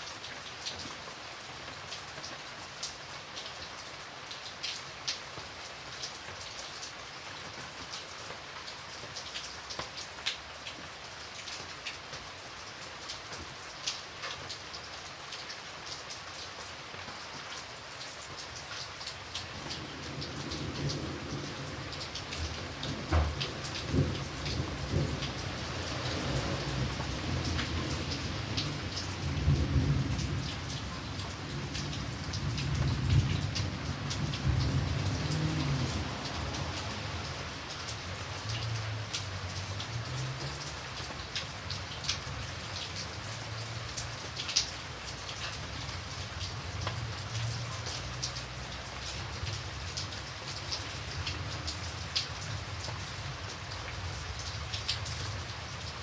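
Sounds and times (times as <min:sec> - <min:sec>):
light rain falling: 0:00.0 - 0:56.0
raindrops ticking: 0:04.3 - 0:56.0
low rumble of thunder: 0:19.5 - 0:37.7.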